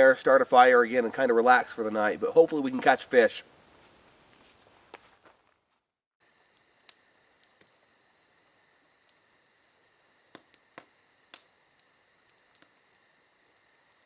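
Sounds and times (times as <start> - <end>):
crickets chirping: 6.2 - 14.0.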